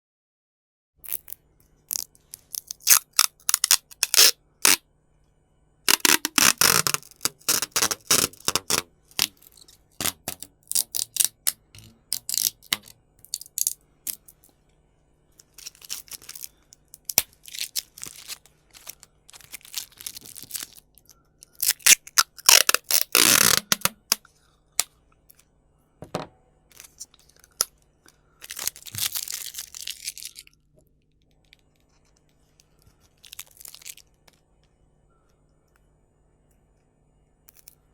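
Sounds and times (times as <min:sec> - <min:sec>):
tape pulled off roll: 0:05.9 - 0:09.4, 0:21.8 - 0:24.2.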